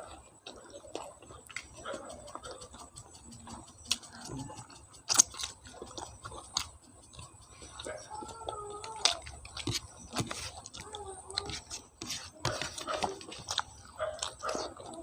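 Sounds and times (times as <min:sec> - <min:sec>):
wet mouth clicks and lip smacks: 0:00.0 - 0:07.8
close-miked chewing: 0:00.0 - 0:15.0.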